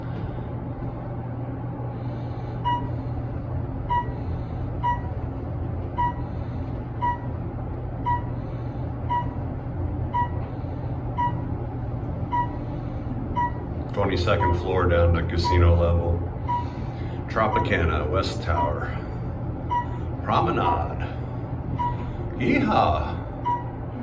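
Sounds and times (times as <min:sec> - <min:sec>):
elevator humming: 0:00.0 - 0:24.0
short electronic beeps: 0:03.9 - 0:05.1, 0:13.4 - 0:13.6, 0:14.3 - 0:14.8, 0:16.4 - 0:16.9, 0:21.8 - 0:22.1.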